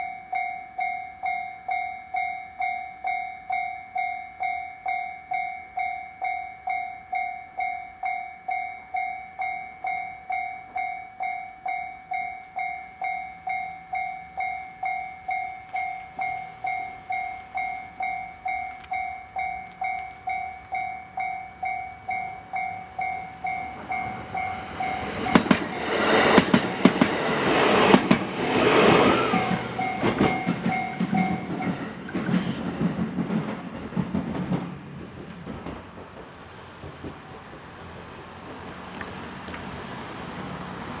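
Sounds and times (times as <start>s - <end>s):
electronic crossing warning bell: 0.0s - 26.2s, 29.1s - 32.2s
train wheels clicking over rail joints: 14.4s - 39.9s.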